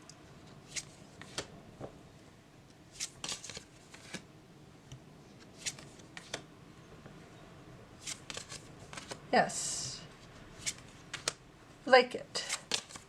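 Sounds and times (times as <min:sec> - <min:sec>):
cards clicking and slapping: 0:00.7 - 0:01.5, 0:03.0 - 0:04.2, 0:05.5 - 0:06.4, 0:08.0 - 0:09.2, 0:10.6 - 0:11.4, 0:12.4 - 0:13.0.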